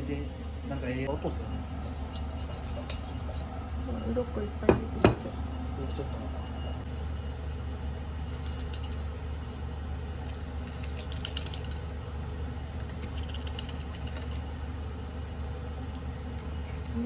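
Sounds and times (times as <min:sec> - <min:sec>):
steady low hum: 0:00.0 - 0:17.0
fish scales being scraped: 0:01.8 - 0:03.5.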